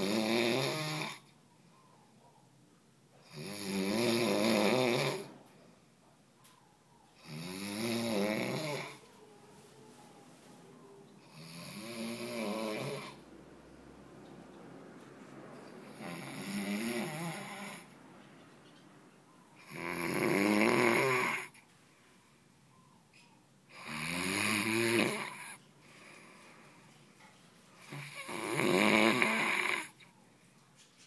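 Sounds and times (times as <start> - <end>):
snoring: 0.0 - 1.3, 3.2 - 5.3, 7.2 - 9.0, 11.2 - 13.2, 15.8 - 17.9, 19.6 - 21.6, 23.7 - 26.6, 27.8 - 30.0
quiet breaths: 21.2 - 24.0, 25.0 - 31.0.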